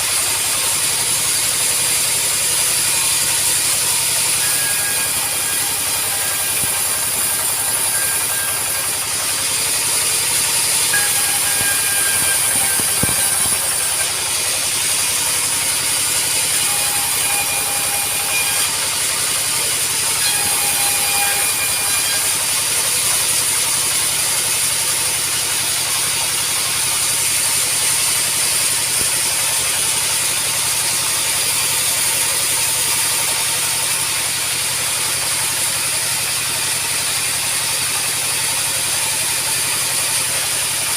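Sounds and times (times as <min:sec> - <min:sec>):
sawmill machinery cutting timber: 0:00.0 - 0:40.9.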